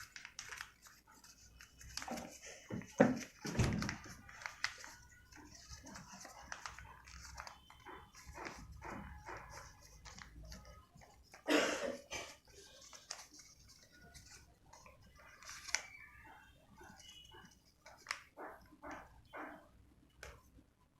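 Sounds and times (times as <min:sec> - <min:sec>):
dog barking: 0:18.4 - 0:19.7.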